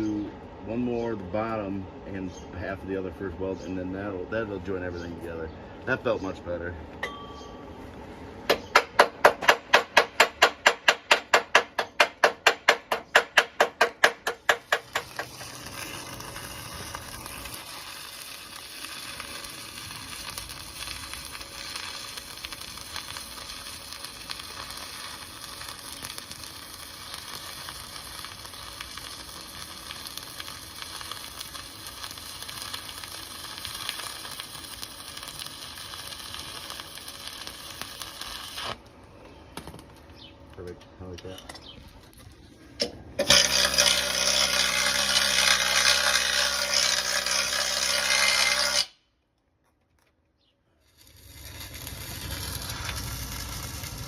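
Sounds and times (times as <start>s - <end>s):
rapid rhythmic welding pulsing: 8.7s - 38.8s, 43.2s - 48.9s, 50.9s - 54.0s
welding arc crackling sizzle: 9.0s - 38.9s, 43.2s - 49.0s, 50.8s - 54.0s.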